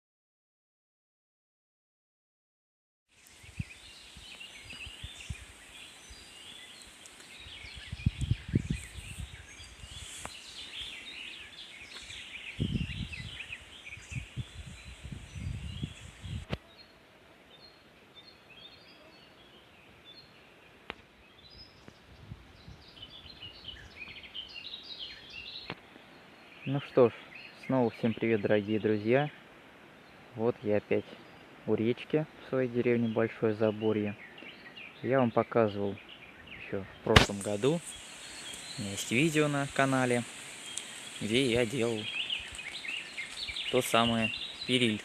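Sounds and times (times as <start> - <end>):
birds chirping and singing: 3.2 - 16.9, 21.3 - 29.4, 32.6 - 45.0
low rumbling on microphone: 12.6 - 16.5.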